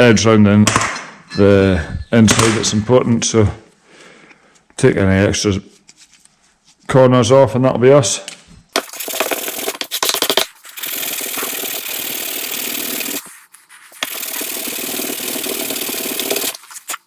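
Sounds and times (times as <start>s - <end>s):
sanding-like scraping: 12.4s - 17.0s.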